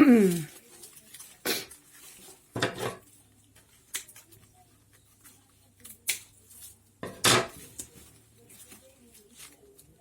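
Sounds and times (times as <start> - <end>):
palm leaf strips crinkling: 0.0 - 10.0.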